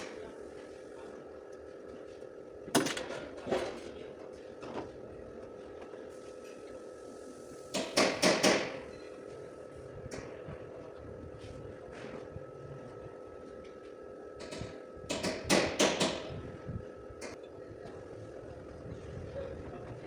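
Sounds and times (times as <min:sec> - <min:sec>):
hammer on sheet-metal panel: 0:07.8 - 0:08.8.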